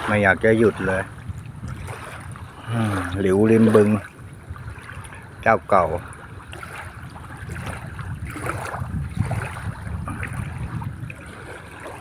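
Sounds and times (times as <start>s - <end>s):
waves washing on water: 0.0s - 12.0s
wind buffeting microphone: 0.0s - 12.0s.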